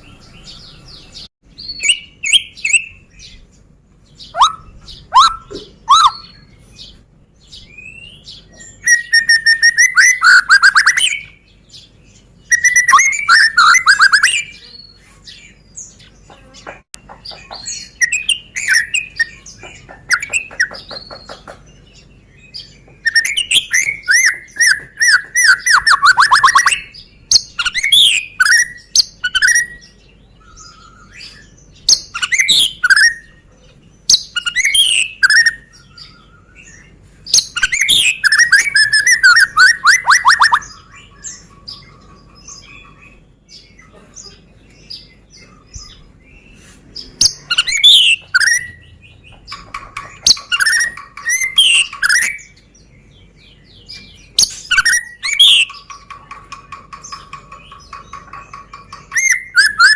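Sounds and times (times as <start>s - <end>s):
bird singing whistled phrases: 4.2s - 6.5s, 7.7s - 11.4s, 12.5s - 14.7s, 23.0s - 33.4s, 34.2s - 36.8s, 37.4s - 41.4s, 47.2s - 48.8s, 50.2s - 52.6s, 54.4s - 55.8s, 59.1s - 59.9s.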